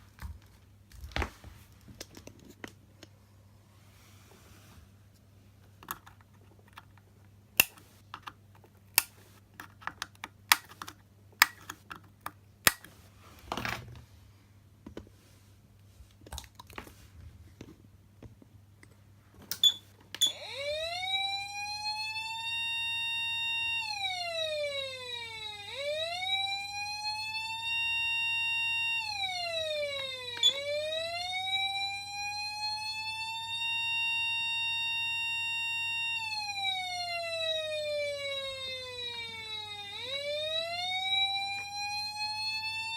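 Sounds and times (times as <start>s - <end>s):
wailing siren: 20.2s - 42.9s.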